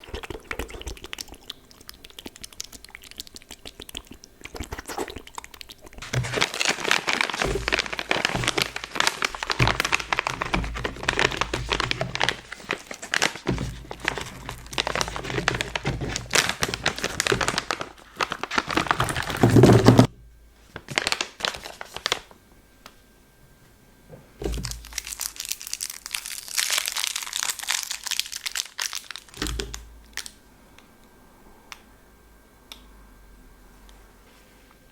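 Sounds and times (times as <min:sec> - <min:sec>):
plastic wrapper crinkling: 0:04.5 - 0:20.1, 0:20.7 - 0:22.4, 0:24.4 - 0:30.4.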